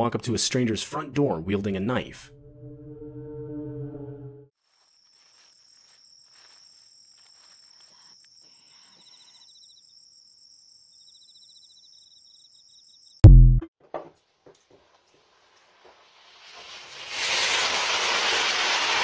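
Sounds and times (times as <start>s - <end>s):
crickets trilling: 4.6s - 13.2s
loud low burst: 13.2s - 13.7s.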